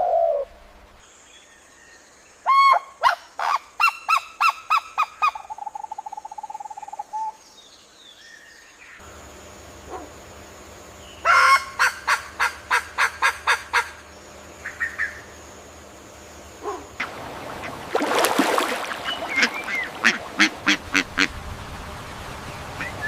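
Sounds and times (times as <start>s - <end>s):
bird calling: 0.0s - 0.6s, 9.8s - 10.2s, 11.0s - 21.4s, 22.4s - 23.0s
harsh bird call: 18.5s - 21.3s.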